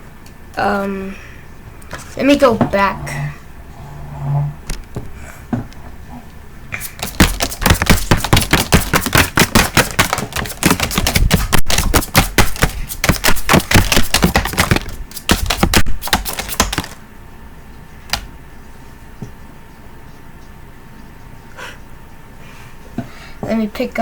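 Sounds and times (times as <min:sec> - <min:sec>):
playing cards snapping clicks: 0:06.8 - 0:17.0.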